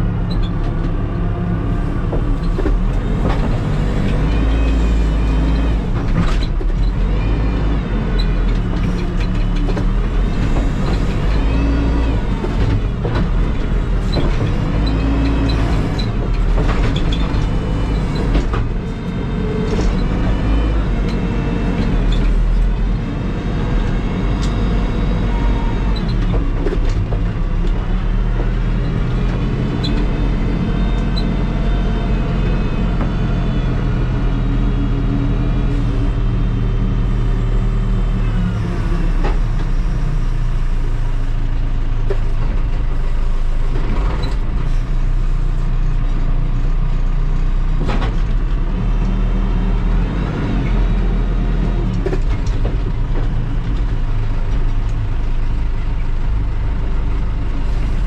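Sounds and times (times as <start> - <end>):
diesel engine working under load: 0.0 - 58.0.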